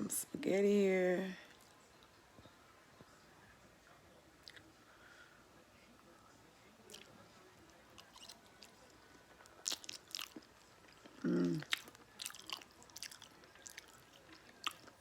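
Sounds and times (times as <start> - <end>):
person chewing spaghetti: 4.4 - 4.7, 6.9 - 15.0
person humming: 11.2 - 11.6.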